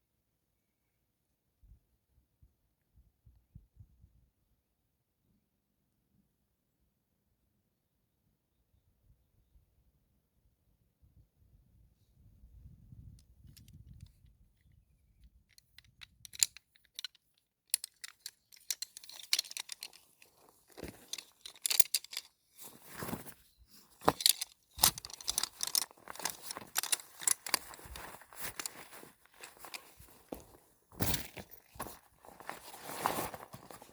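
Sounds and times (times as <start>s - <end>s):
packaging rustling and crinkling: 17.7s - 33.9s.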